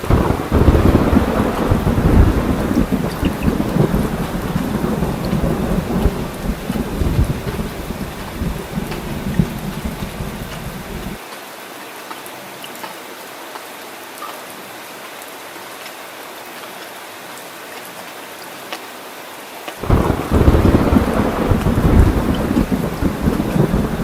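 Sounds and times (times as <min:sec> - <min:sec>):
rain hissing: 0:00.0 - 0:11.2, 0:19.5 - 0:24.0
raindrops ticking: 0:00.0 - 0:11.2, 0:19.7 - 0:24.0
thunder rumbling: 0:00.0 - 0:11.2, 0:19.8 - 0:24.0.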